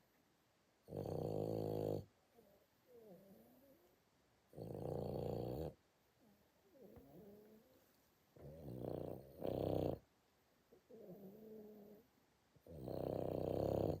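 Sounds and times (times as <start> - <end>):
dog snoring: 0.9 - 3.8, 4.5 - 7.7, 8.4 - 10.0, 10.9 - 12.0, 12.6 - 14.0.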